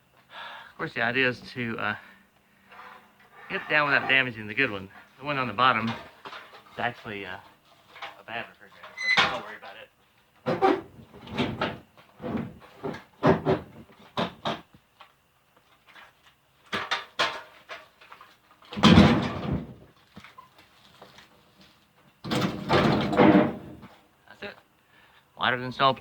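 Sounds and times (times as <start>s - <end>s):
refrigerator cabinet knocks and scrapes: 10.4s - 14.7s, 18.8s - 19.9s, 22.2s - 23.9s.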